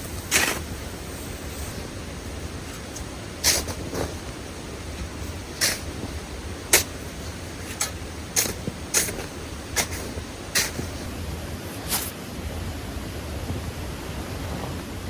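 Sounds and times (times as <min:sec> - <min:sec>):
creek running: 0:00.0 - 0:11.2.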